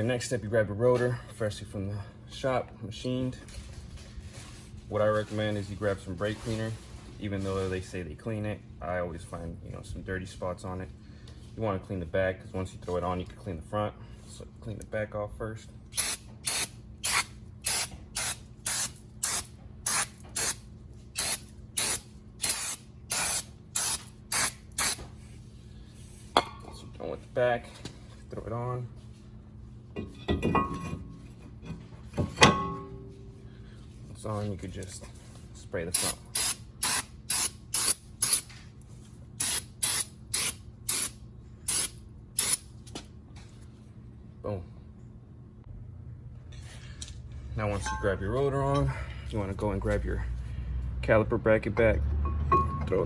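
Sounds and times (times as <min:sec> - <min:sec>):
aerosol spray hissing bursts: 0:16.0 - 0:20.6.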